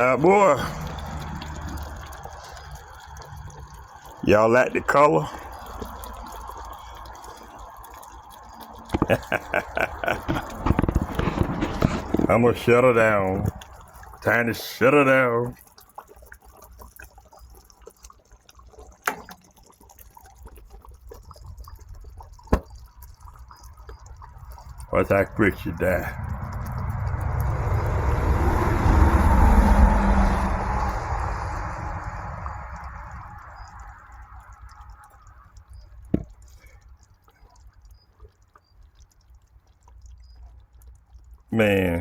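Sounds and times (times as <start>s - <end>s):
cooker noise: 0.0s - 42.0s
gravy bubbling in a pot: 0.0s - 42.0s
faint small ticks and clicks: 5.2s - 12.4s, 15.4s - 24.9s, 32.4s - 41.6s.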